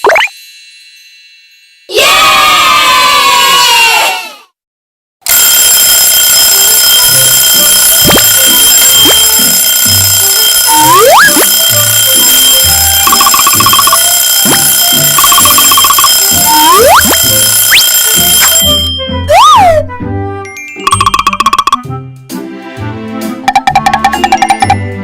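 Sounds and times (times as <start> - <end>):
electronic alarm-like ringing: 5.3 - 19.1, 20.8 - 21.8, 23.4 - 24.9.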